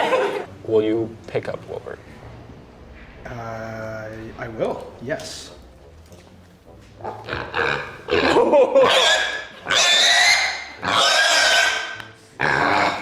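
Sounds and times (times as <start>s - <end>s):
pig squealing: 7.0s - 13.0s.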